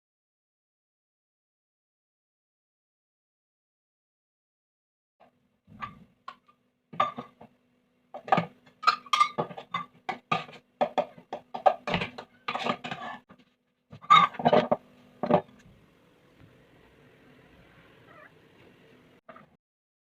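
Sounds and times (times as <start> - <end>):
dishes and utensils clinking: 7.0 - 7.5, 8.2 - 15.5
faint steady hum: 13.4 - 19.2.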